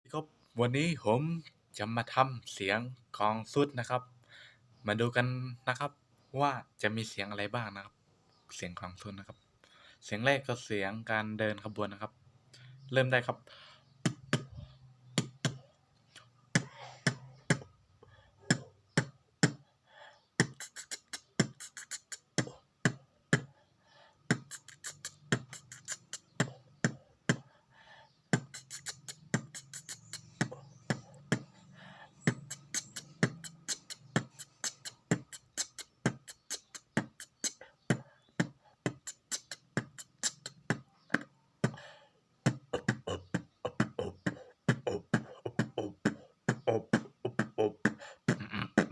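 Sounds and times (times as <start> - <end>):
vocal beatboxing drum cadence: 14.0 - 17.8, 18.4 - 19.7, 20.4 - 27.6, 28.3 - 48.9.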